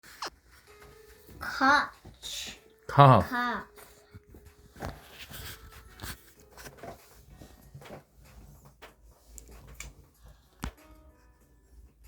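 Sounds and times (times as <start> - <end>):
handling rustles and taps: 3.8 - 11.0.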